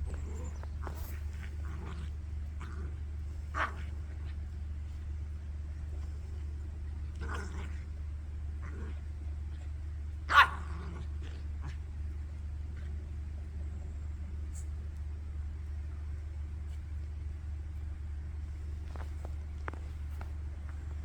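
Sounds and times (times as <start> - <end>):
dog barking: 3.5 - 4.0, 10.3 - 10.8.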